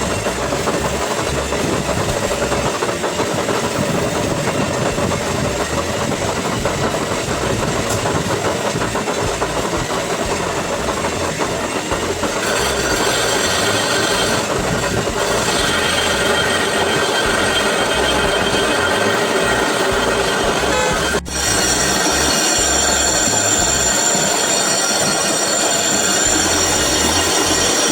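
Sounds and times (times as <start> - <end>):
lathe clattering: 0.0 - 27.9
cutting tool ringing tone: 7.2 - 27.9.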